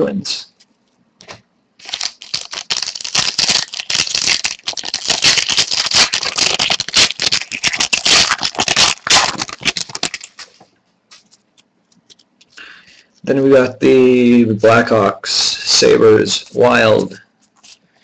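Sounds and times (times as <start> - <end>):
wrapper and cards crinkling: 1.2 - 12.6.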